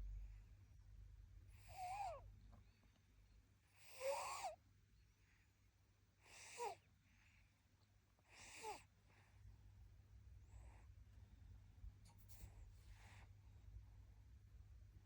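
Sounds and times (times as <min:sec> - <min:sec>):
baby snoring squeakily: 0:03.8 - 0:04.6.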